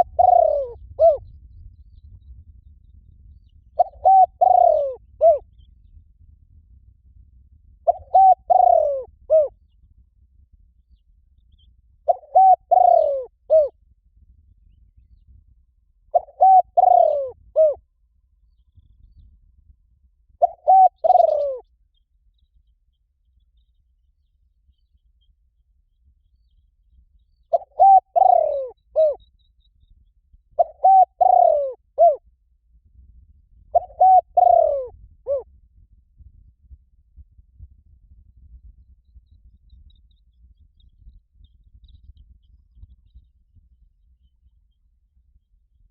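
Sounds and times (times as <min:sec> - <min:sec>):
dove cooing: 0:00.0 - 0:01.2, 0:03.8 - 0:05.4, 0:07.8 - 0:09.5, 0:12.1 - 0:13.8, 0:16.1 - 0:17.8, 0:20.4 - 0:21.6, 0:27.5 - 0:29.2, 0:30.6 - 0:32.2, 0:33.7 - 0:35.5.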